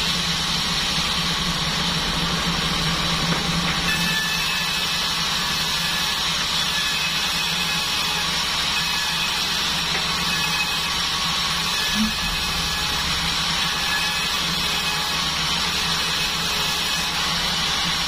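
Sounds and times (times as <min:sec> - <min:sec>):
band sawmill droning: 0:00.0 - 0:18.0.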